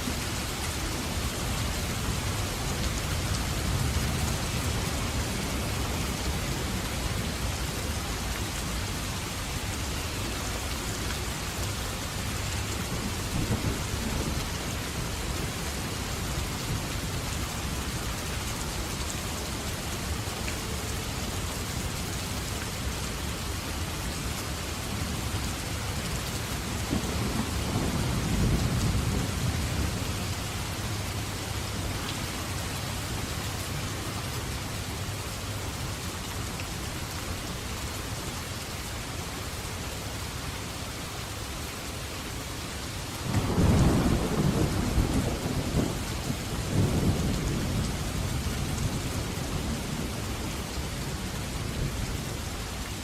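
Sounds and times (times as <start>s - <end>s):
heavy rain: 0.0s - 53.0s
thunder rumbling: 26.6s - 30.7s, 43.2s - 50.3s.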